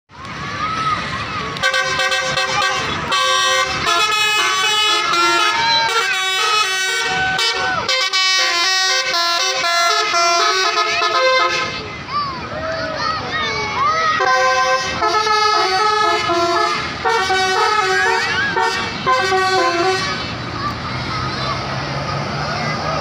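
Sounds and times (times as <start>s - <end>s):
multi-tone air horn melody: 1.6s - 11.9s, 14.2s - 20.2s.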